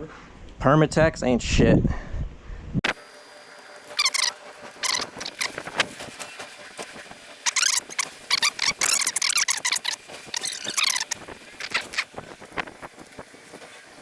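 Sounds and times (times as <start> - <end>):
squeaky scraping on metal: 3.9 - 14.0.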